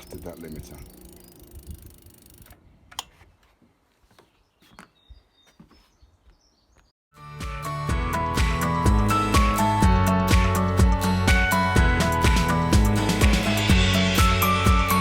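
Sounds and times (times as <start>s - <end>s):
high bird chirps: 4.2s - 6.9s
music: 7.1s - 15.0s.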